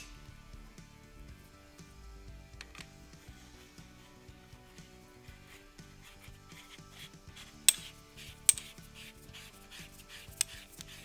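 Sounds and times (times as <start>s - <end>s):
quiet background music: 0.0s - 11.0s
tools rubbing and scraping: 2.9s - 11.0s
sharp metallic clicks: 7.7s - 9.0s.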